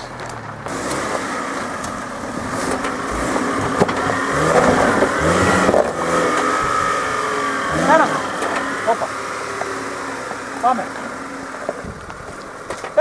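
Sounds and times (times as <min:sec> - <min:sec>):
off-road vehicle engine revving: 0:00.0 - 0:13.0
sharp knocks: 0:02.4 - 0:07.2.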